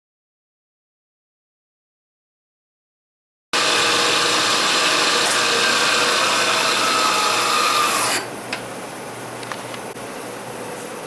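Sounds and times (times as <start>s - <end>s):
machine tool cutting steel bar: 3.6s - 8.3s
machine hum: 3.6s - 10.5s.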